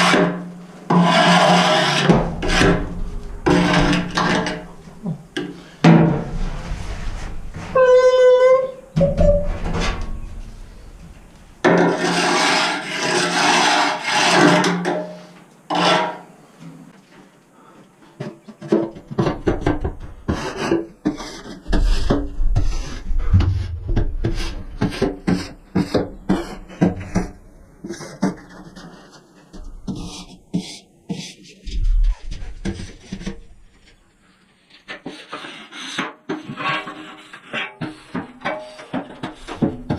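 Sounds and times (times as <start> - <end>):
scraper scraping metal walls: 0.9 - 5.0, 6.1 - 14.7.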